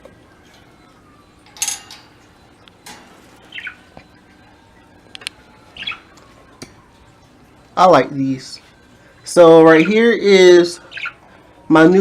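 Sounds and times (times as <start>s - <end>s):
sharp clinks on cage wire: 1.4s - 3.2s
budgerigars chirping: 2.4s - 4.9s, 5.7s - 6.2s, 9.4s - 11.2s.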